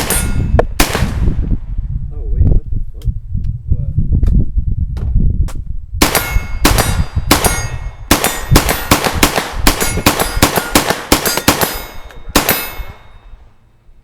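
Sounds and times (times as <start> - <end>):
rapid semi-automatic gunfire: 6.0 - 13.1.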